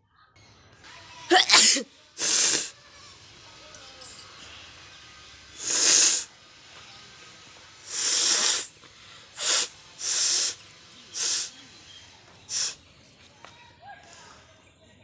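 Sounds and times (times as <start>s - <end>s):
person blowing nose: 1.4s - 2.7s, 5.6s - 6.3s, 7.8s - 8.7s, 9.4s - 10.6s, 11.2s - 11.5s, 12.5s - 12.8s.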